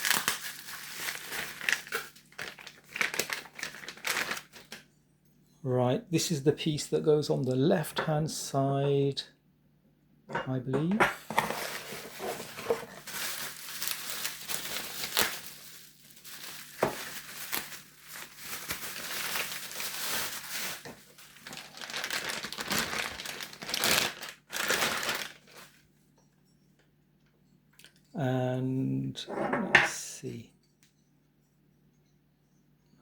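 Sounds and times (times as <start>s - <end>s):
plastic packaging crinkling: 0.0s - 4.8s, 11.4s - 25.8s.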